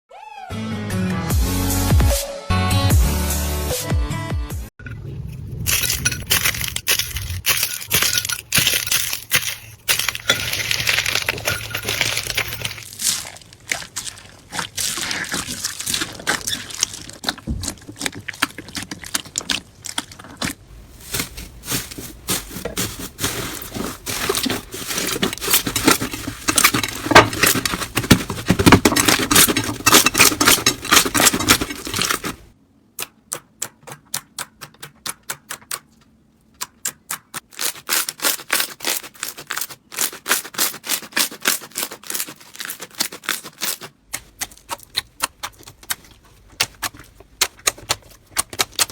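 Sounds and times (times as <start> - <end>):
crunchy slime crackling: 5.7 - 32.5, 37.5 - 48.9.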